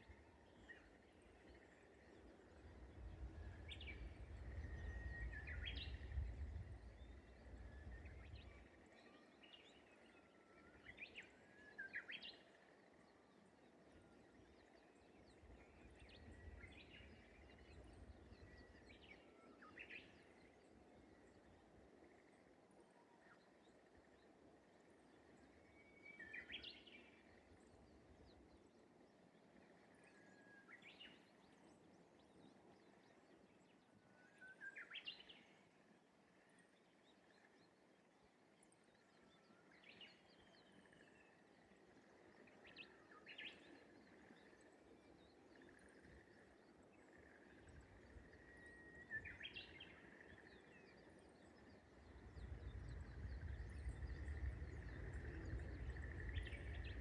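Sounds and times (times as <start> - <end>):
warbler singing: 42.0 - 57.0.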